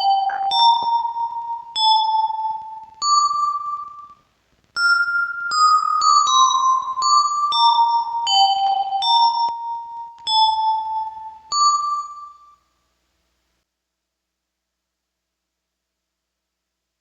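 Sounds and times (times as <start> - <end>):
bell-like keyboard melody with echoes: 0.0 - 4.2, 4.8 - 12.6.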